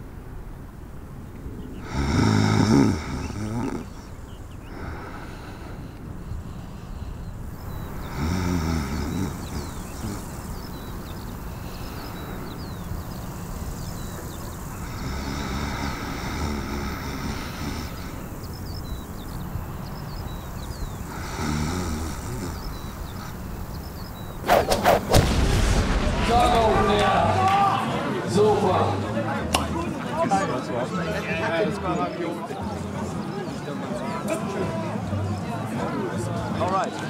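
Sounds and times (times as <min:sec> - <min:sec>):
person snoring: 0:01.8 - 0:04.1, 0:07.6 - 0:10.8, 0:14.8 - 0:18.4, 0:21.0 - 0:23.4.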